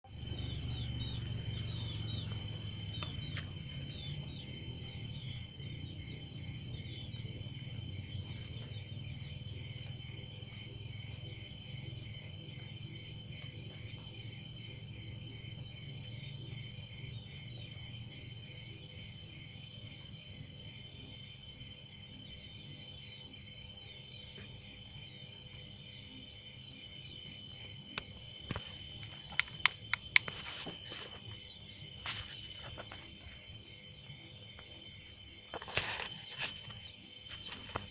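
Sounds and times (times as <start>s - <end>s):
insects trilling: 0.1s - 37.9s
sharp clicks: 29.2s - 30.3s.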